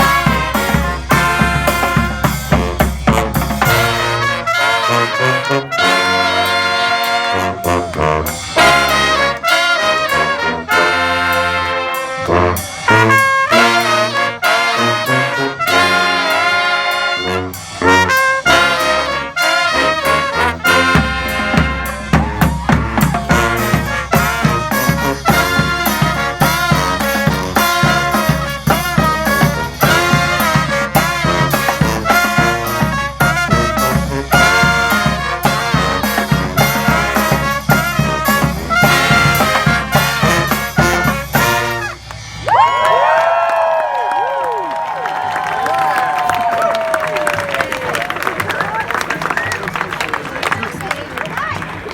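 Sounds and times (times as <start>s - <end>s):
drums driving beat: 0.0s - 4.5s, 6.5s - 9.4s, 20.0s - 43.8s
brass band playing: 0.0s - 50.8s.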